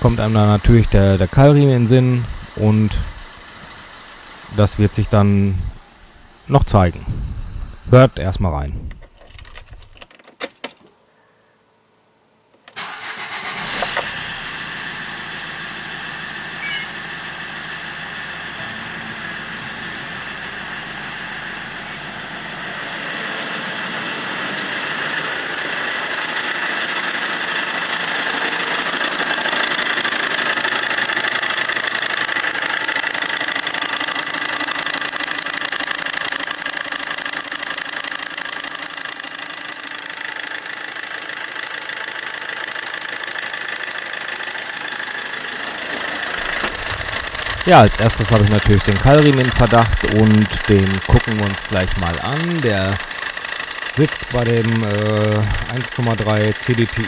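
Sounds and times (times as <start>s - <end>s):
diesel engine starting: 0.0s - 10.0s, 12.8s - 57.0s
high-pitched belt squeal: 13.3s - 34.3s, 44.0s - 57.0s.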